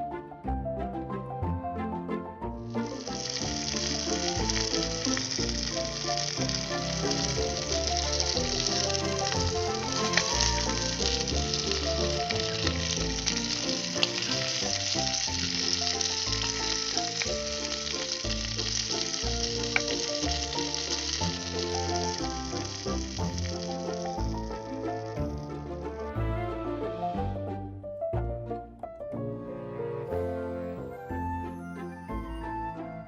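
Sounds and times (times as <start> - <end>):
background music: 0.0 - 33.0
chicken sizzling in oil: 2.8 - 25.5.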